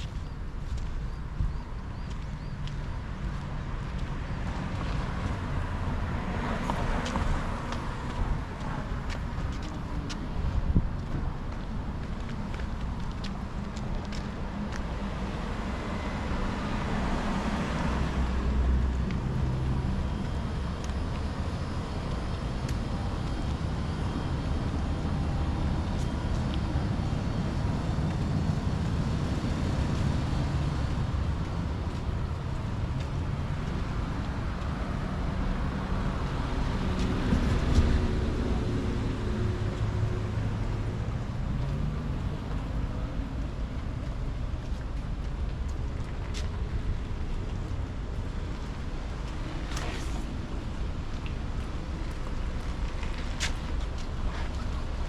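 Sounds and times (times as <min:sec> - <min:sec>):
traffic rumble: 0:00.0 - 0:55.0
vehicle passing by: 0:15.1 - 0:44.2.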